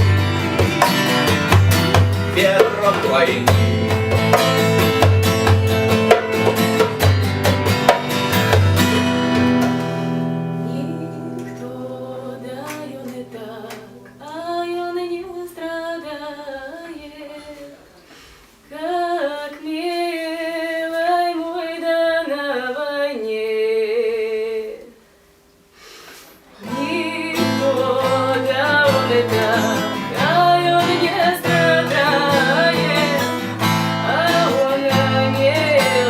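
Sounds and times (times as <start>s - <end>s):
percussion: 0.0s - 10.2s, 26.8s - 36.0s
strummed acoustic guitar: 0.0s - 14.3s, 26.6s - 36.0s.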